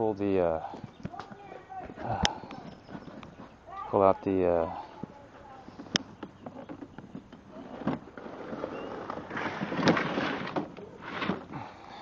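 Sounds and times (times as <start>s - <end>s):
tools scraping and clattering: 5.7s - 11.6s.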